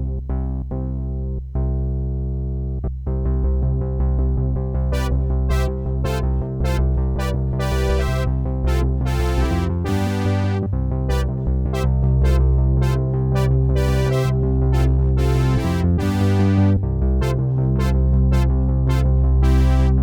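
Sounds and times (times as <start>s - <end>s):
held synthesizer bass line: 3.8s - 20.0s
bright plucked synthesizer notes: 4.9s - 20.0s.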